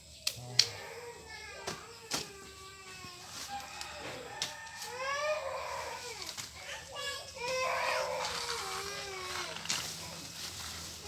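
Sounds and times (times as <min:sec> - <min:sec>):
small child crying: 0:00.7 - 0:03.7, 0:04.8 - 0:10.2.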